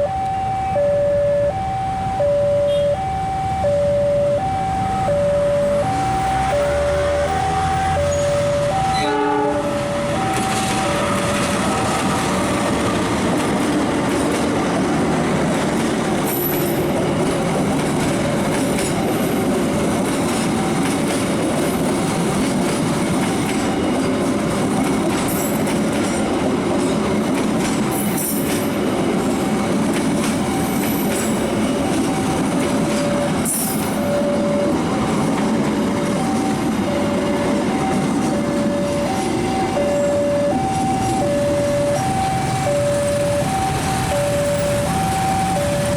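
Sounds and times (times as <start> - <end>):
two-tone warning signal: 0.0 - 12.8, 30.3 - 45.9
train wheels rumbling on rails: 4.4 - 45.9.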